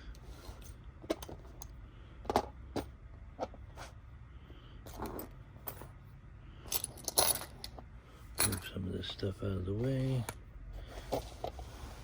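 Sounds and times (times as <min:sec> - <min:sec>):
small metal parts clicking: 0:06.7 - 0:07.8.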